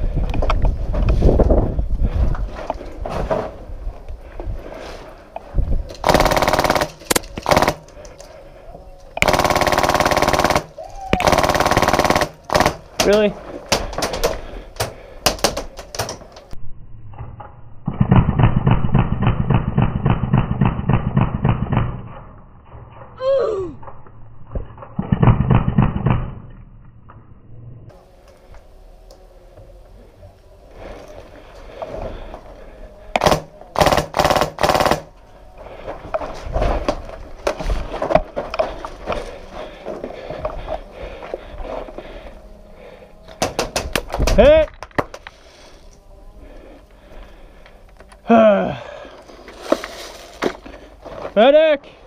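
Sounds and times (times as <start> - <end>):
airsoft gun firing: 6.0 - 7.9, 9.2 - 13.0, 33.2 - 35.1.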